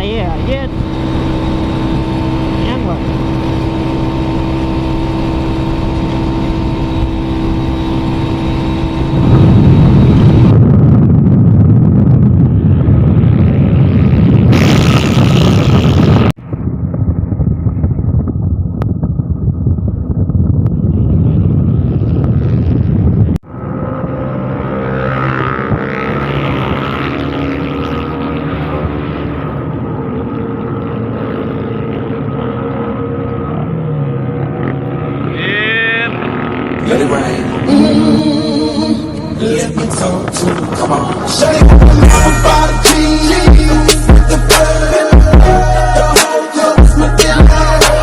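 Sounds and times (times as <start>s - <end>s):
motorboat engine running: 0.0s - 11.4s, 36.0s - 44.5s.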